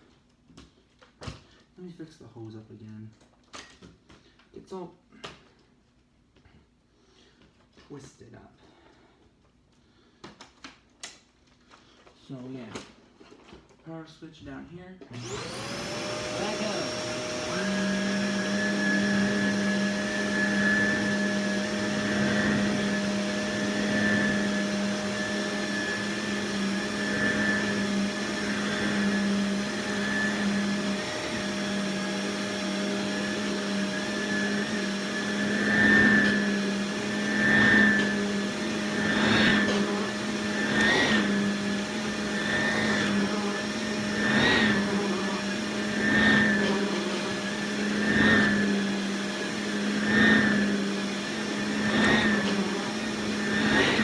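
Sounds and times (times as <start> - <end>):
vacuum cleaner motor whine: 15.1 - 54.0
vacuum nozzle pushed over carpet: 15.2 - 54.0.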